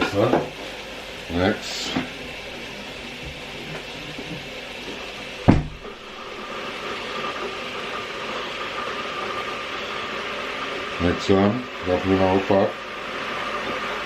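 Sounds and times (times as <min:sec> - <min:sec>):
dumplings frying in hot oil: 0:00.0 - 0:14.0
sharp knock: 0:05.5 - 0:06.0.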